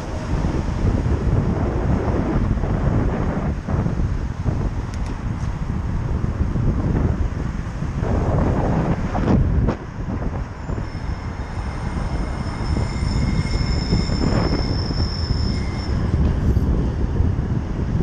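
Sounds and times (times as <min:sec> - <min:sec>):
wind rumbling on microphone: 0:00.0 - 0:18.0
thin high squeal: 0:10.6 - 0:16.6.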